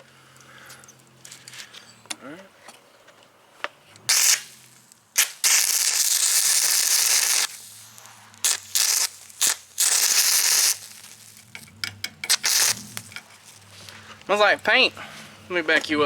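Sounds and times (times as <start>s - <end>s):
welding arc crackling and sizzling: 4.1s - 13.7s.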